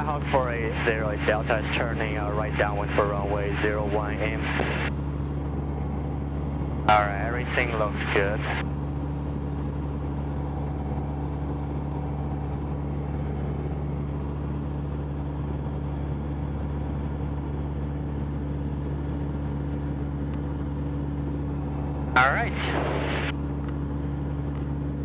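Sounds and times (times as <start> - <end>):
airplane engine and propeller droning: 0.0 - 25.0.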